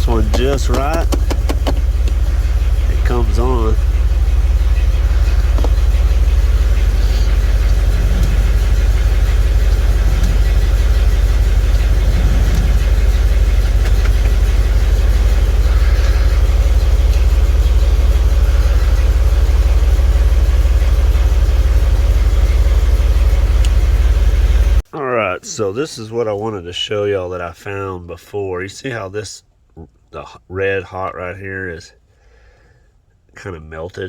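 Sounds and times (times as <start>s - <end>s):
blower fan running: 0.0s - 24.8s
truck engine idling: 0.0s - 24.8s.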